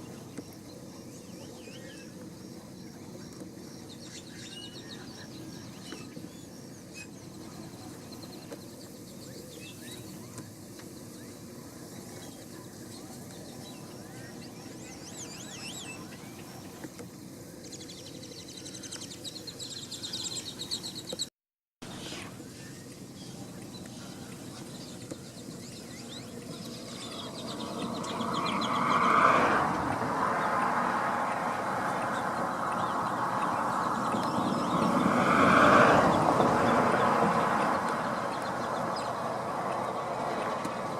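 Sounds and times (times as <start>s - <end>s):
low outdoor rumble: 21.8s - 40.9s.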